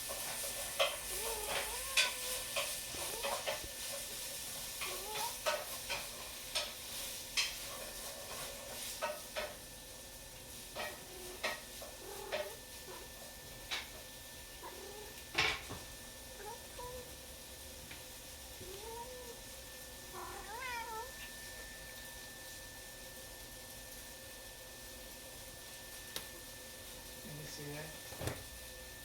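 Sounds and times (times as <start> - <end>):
cat growling: 1.1 - 2.4, 10.9 - 13.2, 14.6 - 15.3, 18.6 - 19.5, 20.1 - 21.4.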